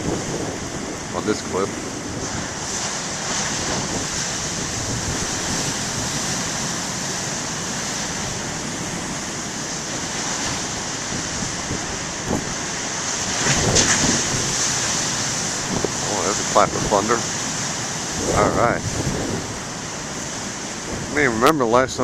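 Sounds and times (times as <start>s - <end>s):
ocean waves breaking: 0.0s - 22.0s
wind buffeting microphone: 0.0s - 22.0s.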